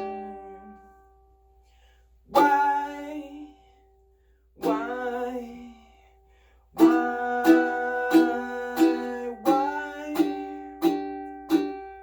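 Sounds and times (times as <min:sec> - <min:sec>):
ukulele strumming: 0:00.0 - 0:01.3, 0:02.3 - 0:03.7, 0:04.6 - 0:06.0, 0:06.8 - 0:12.0.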